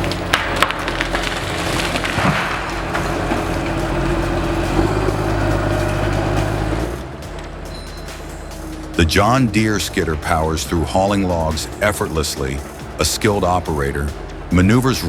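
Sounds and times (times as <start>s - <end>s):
sharp wood snaps: 0.0s - 4.2s
wood cracking and splintering: 0.0s - 8.3s
logging machine engine running: 0.0s - 15.0s.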